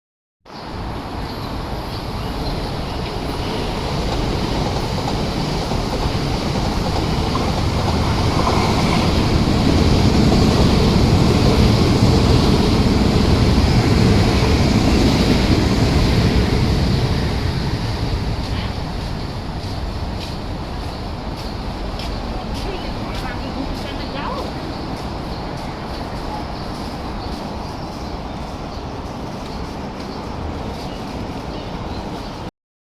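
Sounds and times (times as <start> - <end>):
electric trains passing: 0.5 - 32.5.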